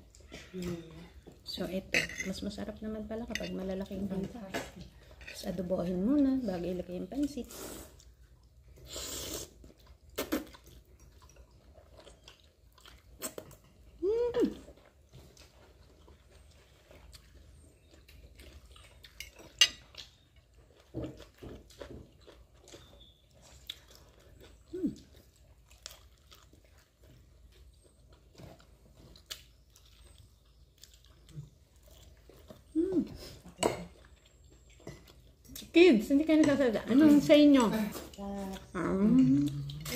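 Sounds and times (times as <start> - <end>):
close-up chewing: 0.0 - 39.9
wet mouth clicks and smacks: 10.1 - 11.4
pitched mouth sounds: 10.2 - 10.6, 38.8 - 39.9.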